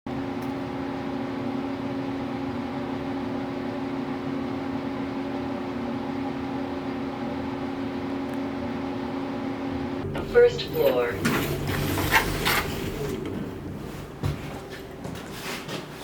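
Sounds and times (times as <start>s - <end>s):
elevator humming: 0.2s - 16.0s
low tones: 9.0s - 15.4s.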